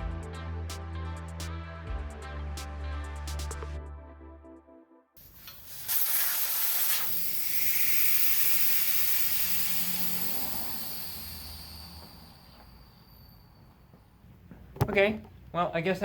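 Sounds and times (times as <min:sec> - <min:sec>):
air hissing out of tire: 0:05.2 - 0:13.9.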